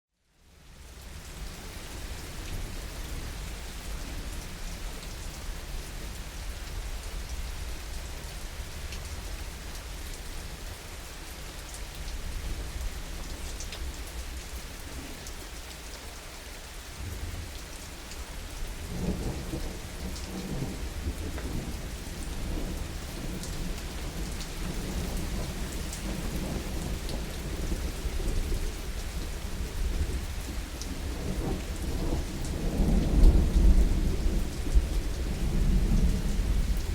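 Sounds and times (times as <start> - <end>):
heavy rain falling: 0.5 - 36.9
thunder rumbling: 17.0 - 17.6.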